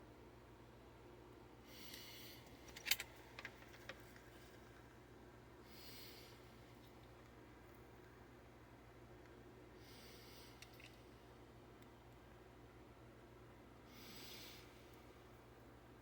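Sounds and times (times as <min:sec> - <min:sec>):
soft breaths: 0:01.6 - 0:03.3, 0:04.0 - 0:07.1, 0:09.7 - 0:11.4, 0:13.8 - 0:15.5.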